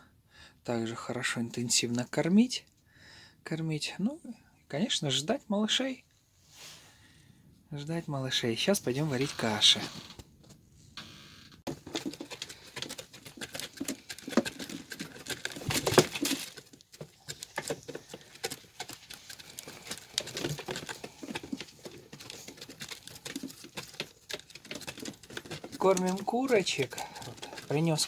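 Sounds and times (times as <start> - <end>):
hens pecking at feed: 11.7 - 28.0.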